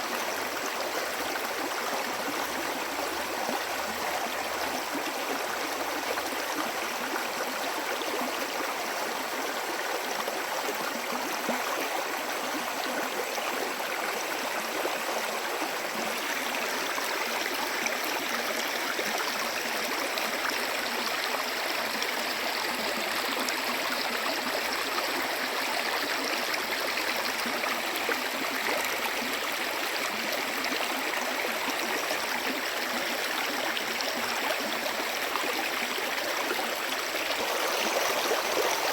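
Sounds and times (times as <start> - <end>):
stream rushing: 37.0 - 38.9.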